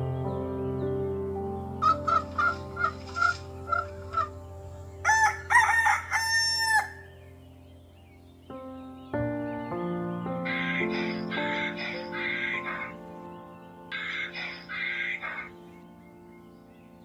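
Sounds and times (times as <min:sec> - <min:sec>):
rooster crowing: 0:05.0 - 0:07.1.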